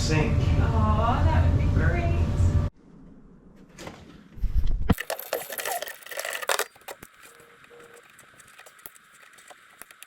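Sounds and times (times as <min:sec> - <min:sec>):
small objects rustling and clattering: 0:04.9 - 0:10.0.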